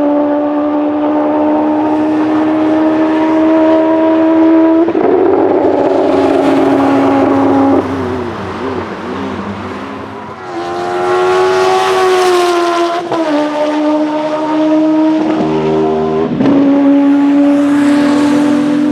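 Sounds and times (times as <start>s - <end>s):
motorcycle engine revving: 0.0s - 18.9s.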